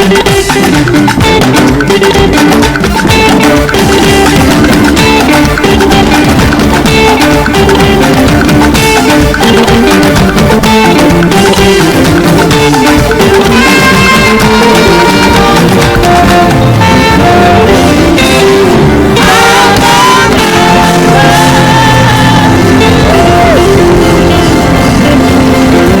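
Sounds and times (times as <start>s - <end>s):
held instrumental notes: 0.0s - 26.0s
live gospel music: 0.0s - 26.0s
people singing: 19.1s - 24.8s
people shouting: 19.1s - 25.3s.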